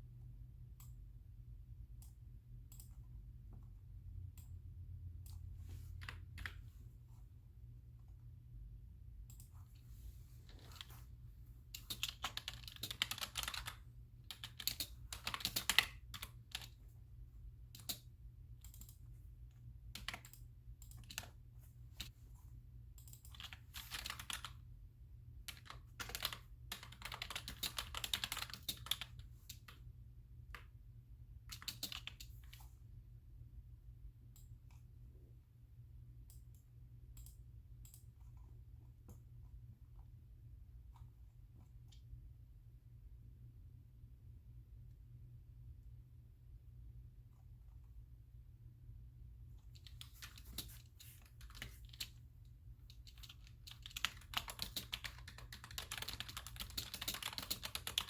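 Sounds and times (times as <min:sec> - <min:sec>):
typing on keyboard: 0:11.6 - 0:16.8, 0:17.7 - 0:19.1, 0:19.9 - 0:22.1, 0:22.9 - 0:24.7, 0:25.4 - 0:29.8, 0:31.4 - 0:32.7, 0:49.6 - 0:52.3, 0:52.9 - 0:58.0.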